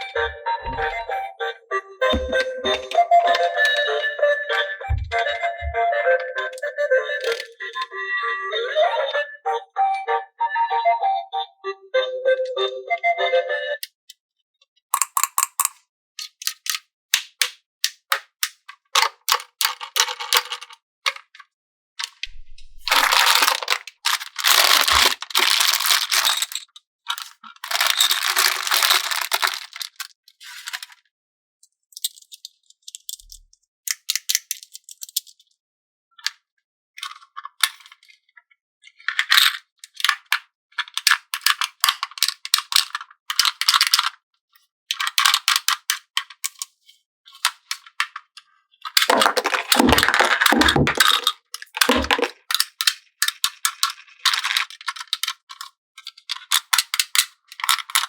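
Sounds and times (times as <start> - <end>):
plastic toys rattling and crinkling: 6.4 - 7.9, 15.0 - 31.1, 31.7 - 35.5, 37.0 - 38.3, 38.9 - 58.0.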